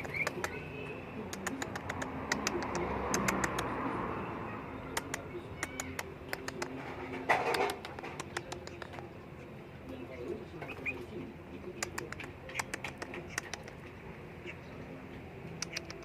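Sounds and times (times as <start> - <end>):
sharp clicks and taps: 1.3 - 3.7, 4.9 - 9.1, 11.8 - 13.9, 15.5 - 16.0.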